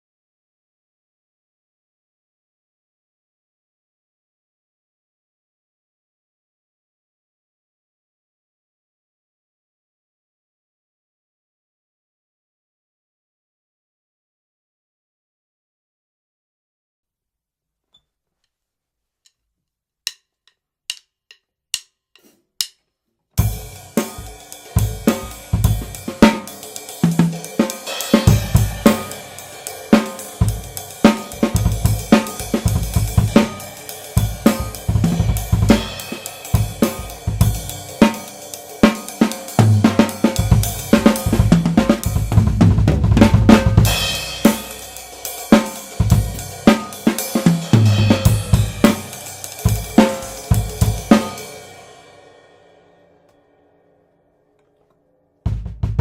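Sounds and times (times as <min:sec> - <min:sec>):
drum kit groove: 0:23.4 - 0:52.3, 0:55.5 - 0:56.0.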